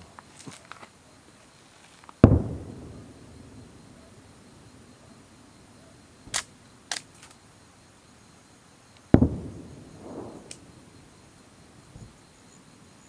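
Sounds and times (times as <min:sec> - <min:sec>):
firework cracks: 0:02.0 - 0:07.4, 0:09.0 - 0:12.2
firework shell booming: 0:02.2 - 0:05.3, 0:09.2 - 0:11.2.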